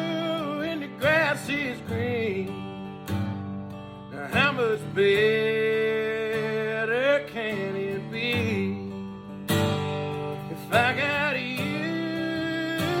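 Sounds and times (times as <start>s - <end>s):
person singing: 0.0s - 2.8s, 10.2s - 13.0s
acoustic guitar: 0.0s - 13.0s
country song: 0.0s - 13.0s.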